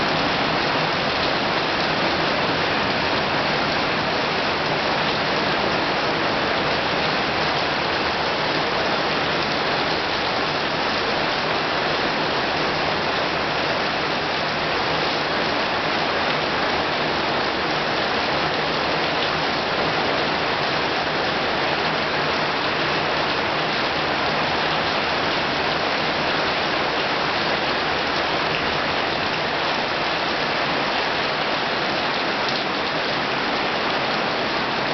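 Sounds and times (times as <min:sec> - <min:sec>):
heavy rain pouring: 0:00.0 - 0:34.9.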